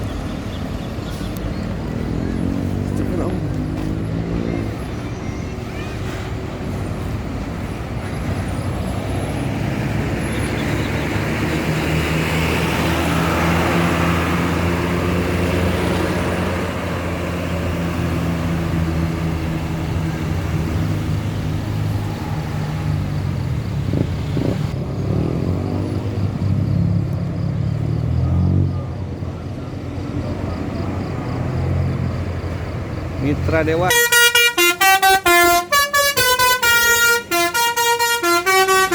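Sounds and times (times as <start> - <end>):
large vehicle engines droning: 0.0 - 38.9
tyre and wind noise: 23.3 - 24.8.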